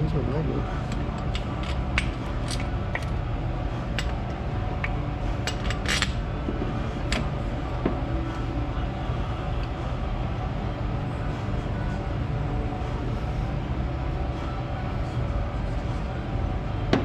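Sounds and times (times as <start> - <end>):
steady low hum: 0.0 - 17.0
metal tools clinking: 0.8 - 3.1, 3.9 - 6.2.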